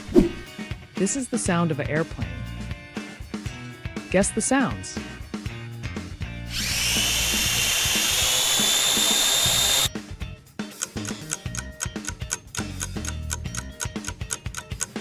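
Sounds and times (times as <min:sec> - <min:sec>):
drone propellers whining: 0:06.5 - 0:09.9.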